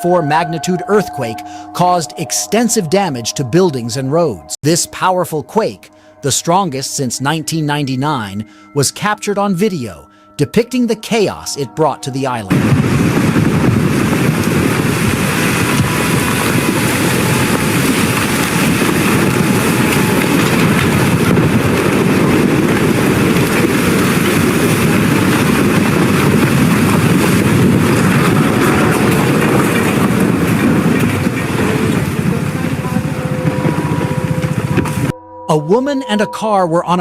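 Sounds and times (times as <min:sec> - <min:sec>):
loud rumbling and rattling: 0:12.5 - 0:35.2.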